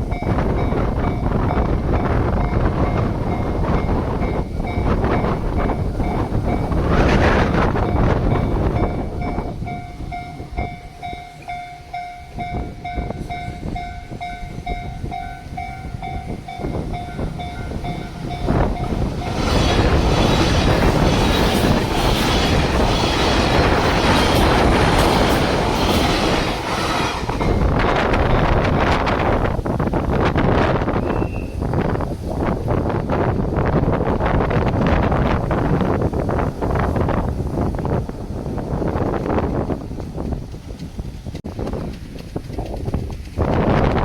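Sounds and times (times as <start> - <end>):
train rumbling past: 0.0 - 44.0
wheels clacking over rail joints: 1.9 - 30.1, 38.8 - 44.0
level-crossing alarm bell: 8.0 - 19.3.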